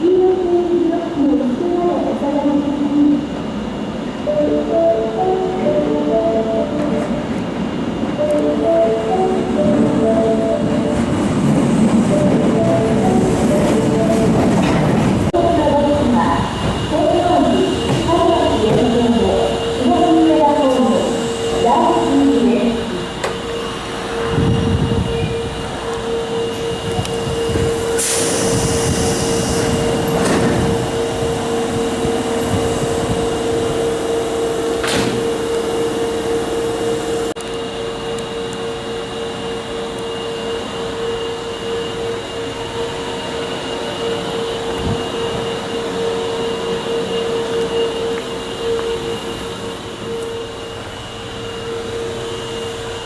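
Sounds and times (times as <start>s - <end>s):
subway train humming: 0.0s - 53.0s
air hiss: 27.8s - 30.1s.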